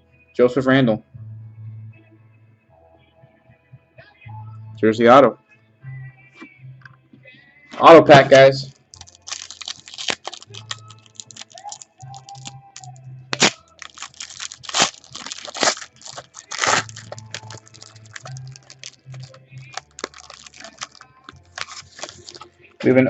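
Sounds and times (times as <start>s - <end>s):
cards rustling: 9.0s - 22.5s
wrapper tearing and crinkling: 9.0s - 22.5s.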